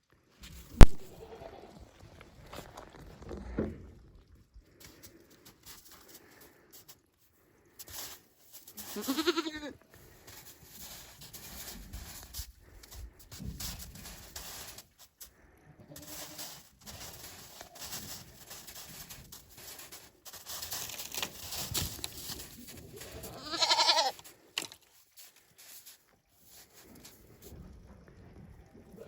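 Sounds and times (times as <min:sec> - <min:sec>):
rustling: 0:07.8 - 0:27.4
goat bleating: 0:08.8 - 0:09.8, 0:23.2 - 0:24.2.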